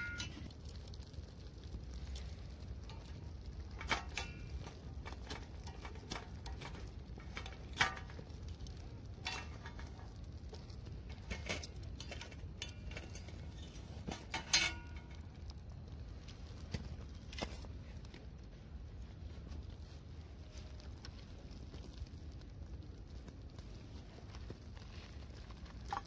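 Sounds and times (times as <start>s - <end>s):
metal cookware clinking: 0.0s - 0.5s, 9.2s - 10.2s, 14.1s - 15.1s
steady low rumble: 0.0s - 26.0s.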